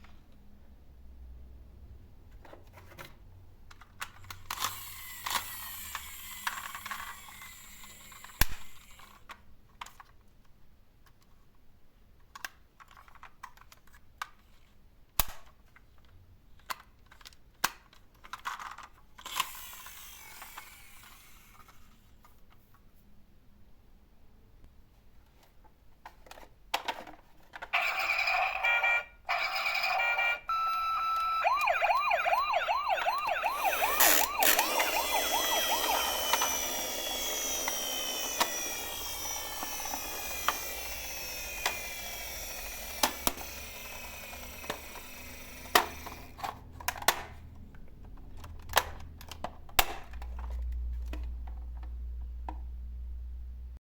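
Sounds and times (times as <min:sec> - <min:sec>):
plastic toys clicking and knocking: 0:02.3 - 0:11.4, 0:12.2 - 0:22.0, 0:25.3 - 0:28.1, 0:33.0 - 0:52.8
toy electronic sirens: 0:27.8 - 0:46.4.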